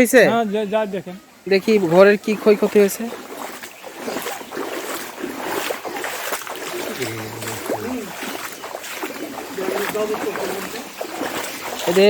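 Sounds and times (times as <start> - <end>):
floodwater sloshing and splashing: 1.2 - 12.0
faint voices: 6.6 - 8.5.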